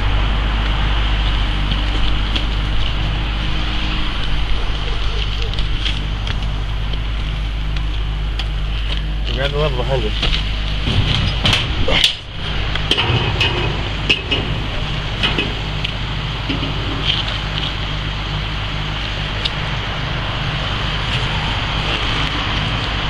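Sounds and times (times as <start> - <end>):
heavy machinery droning: 0.0 - 23.0
sharp metallic knocks and clanks: 10.2 - 17.2.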